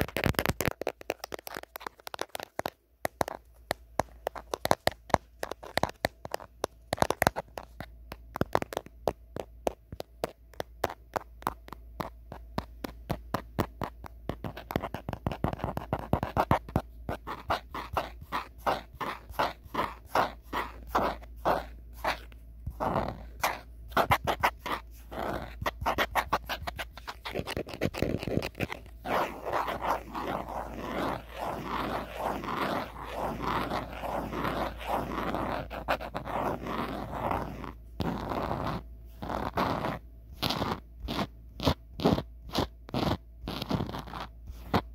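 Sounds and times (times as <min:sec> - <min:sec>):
fingernails scratching: 0:00.0 - 0:44.9
fingernails tapping on phone: 0:00.1 - 0:18.0.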